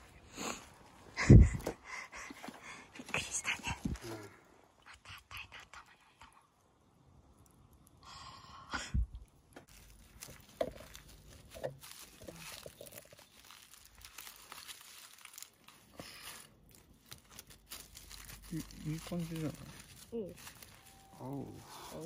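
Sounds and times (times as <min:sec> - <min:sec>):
crinkling tearing and crunching: 0:09.5 - 0:22.0.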